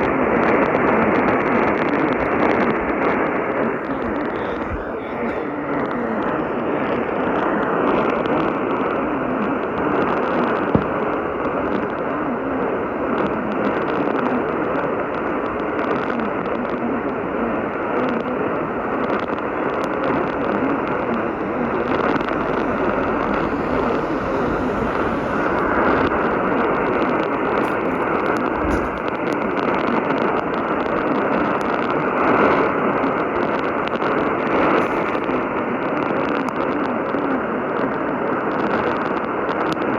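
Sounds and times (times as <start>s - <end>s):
radio static hiss: 3.6s - 7.8s
faint wavering whistle: 18.6s - 29.3s.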